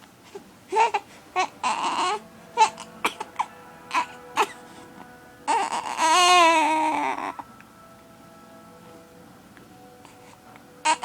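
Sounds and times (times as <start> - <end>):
steady music tones: 0.1 - 11.0
baby crying: 0.7 - 4.8, 5.4 - 7.5.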